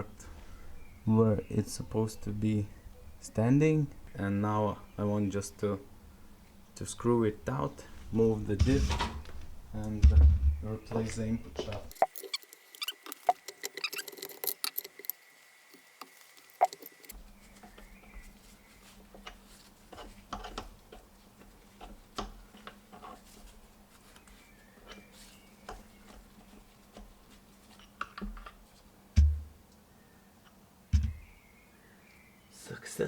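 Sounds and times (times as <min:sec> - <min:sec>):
heavy thumps: 0:07.9 - 0:12.0, 0:29.2 - 0:29.6
hand tools clicking on metal: 0:11.9 - 0:17.1.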